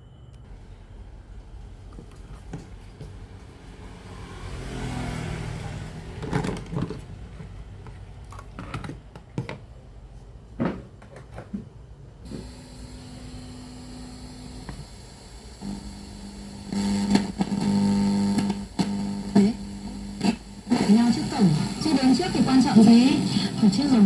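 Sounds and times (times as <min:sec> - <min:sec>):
steady hum-like tone: 0:12.2 - 0:24.0
radio static hiss: 0:12.3 - 0:24.0.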